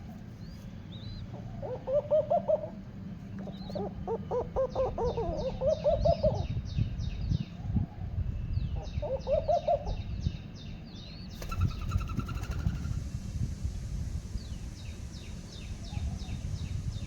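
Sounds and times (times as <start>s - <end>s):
nestling birds chirping: 0.0s - 7.4s, 8.6s - 13.1s
rising-and-falling bird calls: 3.4s - 6.7s, 11.2s - 13.1s
low rumbling noise: 11.6s - 17.0s.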